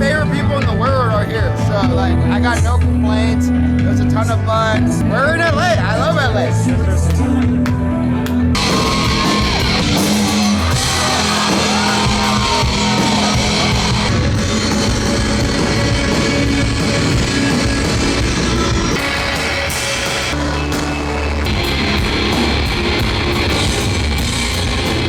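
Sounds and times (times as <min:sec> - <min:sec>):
loud rock music: 0:00.0 - 0:25.0.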